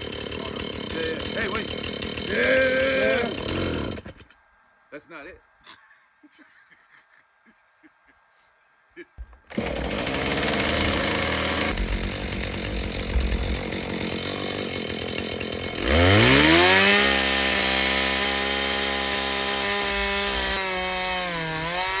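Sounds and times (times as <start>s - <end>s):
two-stroke chainsaw revving: 0.0s - 4.2s, 9.5s - 22.0s.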